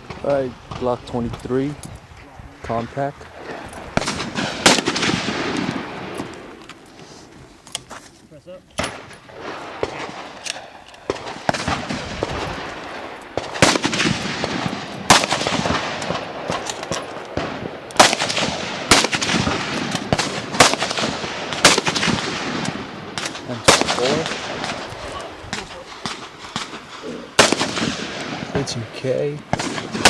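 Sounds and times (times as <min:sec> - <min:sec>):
faint gunshots: 0:03.3 - 0:06.5, 0:08.8 - 0:10.4, 0:11.1 - 0:30.0
loud gunshots with echo: 0:03.3 - 0:06.5, 0:08.8 - 0:10.4, 0:11.1 - 0:30.0.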